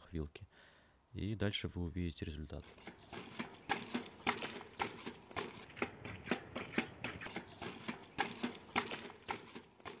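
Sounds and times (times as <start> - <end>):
suspension fork knocking: 2.6 - 10.0.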